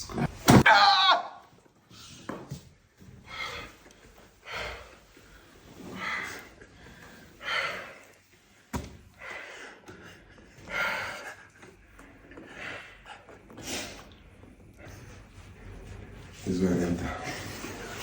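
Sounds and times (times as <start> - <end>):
person breathing heavily: 3.2 - 16.0.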